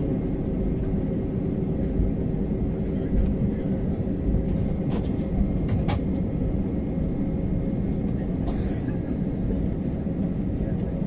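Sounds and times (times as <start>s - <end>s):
airplane cabin engine rumble: 0.0s - 11.0s.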